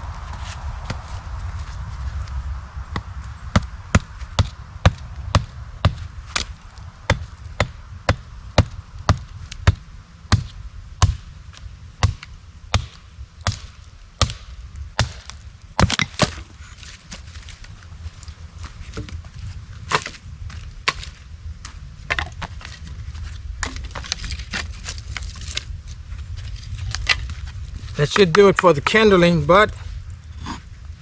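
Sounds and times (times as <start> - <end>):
chopping strikes into wood: 12.0 - 16.5.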